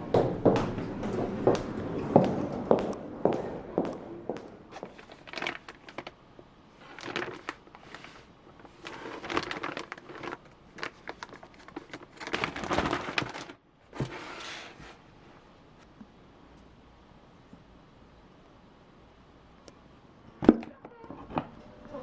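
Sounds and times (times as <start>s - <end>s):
packaging crinkling and rustling: 4.7s - 6.2s, 6.8s - 14.1s.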